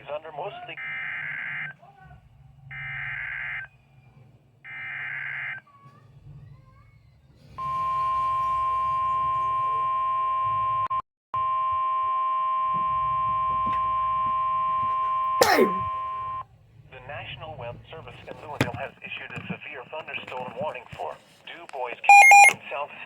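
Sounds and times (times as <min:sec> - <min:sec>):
steady warning alarm tone: 0:22.1 - 0:22.6.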